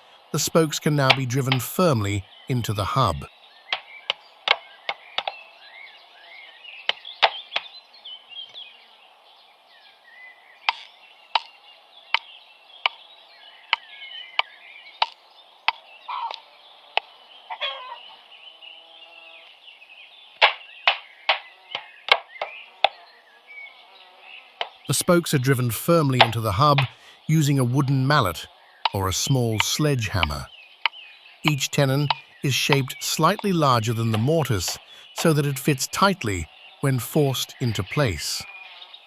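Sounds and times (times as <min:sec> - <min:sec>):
birds chirping faintly: 0:00.0 - 0:39.0
hammer blows on wood: 0:24.9 - 0:30.4, 0:31.5 - 0:38.4.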